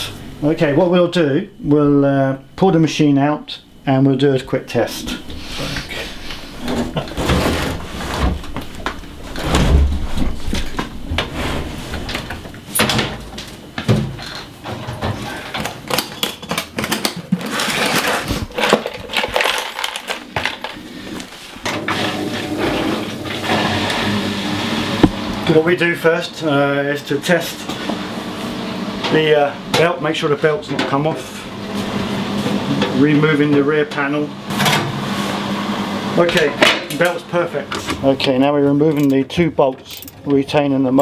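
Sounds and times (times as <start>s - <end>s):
washing machine scraping: 4.9s - 15.7s, 16.8s - 25.6s, 27.2s - 36.6s
washing machine clunking and rattling: 6.1s - 19.8s.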